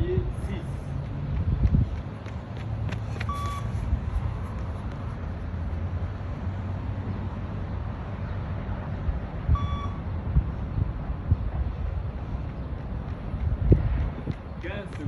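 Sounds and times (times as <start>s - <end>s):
short high electronic beeps: 3.3s - 3.7s, 9.6s - 10.0s.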